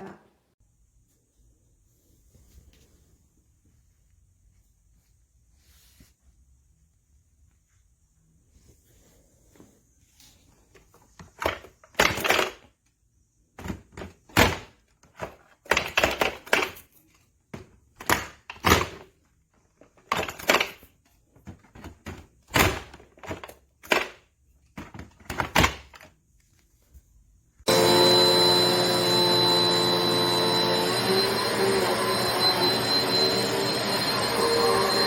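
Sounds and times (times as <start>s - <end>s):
plastic vacuum parts clattering: 11.2s - 12.7s, 13.6s - 26.2s.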